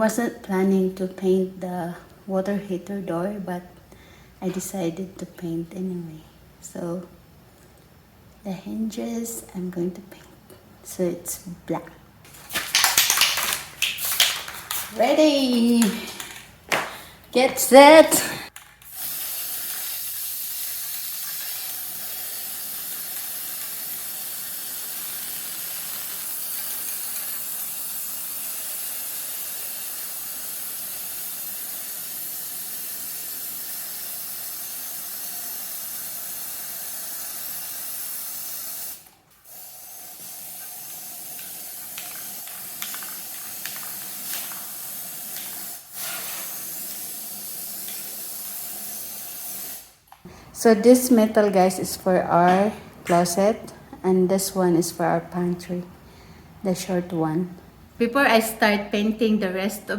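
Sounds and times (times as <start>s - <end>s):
spray paint can hissing: 12.3s - 16.9s, 18.9s - 50.0s.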